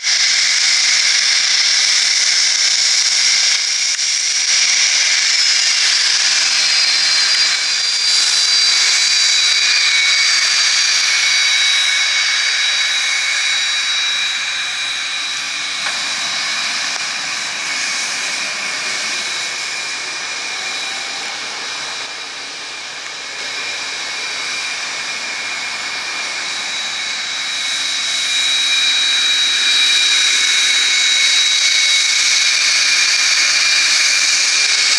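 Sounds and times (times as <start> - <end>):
jet engines high-pitched whine: 0.0 - 34.9
rushing hiss: 0.0 - 34.9.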